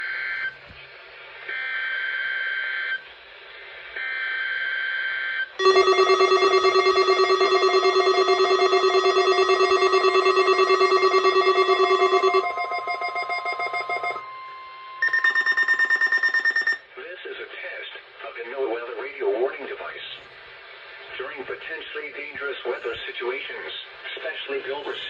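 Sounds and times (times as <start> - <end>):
pulsing alert tone: 5.6 - 14.3.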